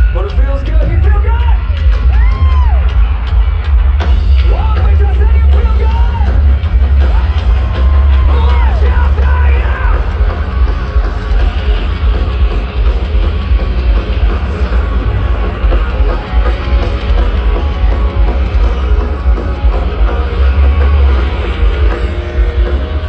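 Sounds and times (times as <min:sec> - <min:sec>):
live rock band playing: 0:00.0 - 0:23.0
person singing and yelling: 0:07.0 - 0:10.2.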